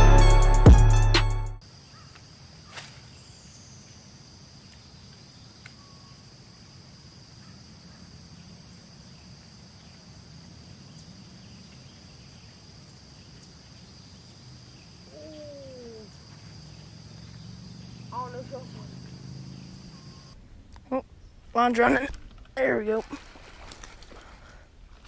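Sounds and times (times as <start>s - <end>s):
high-pitched insect trill: 8.3s - 20.4s.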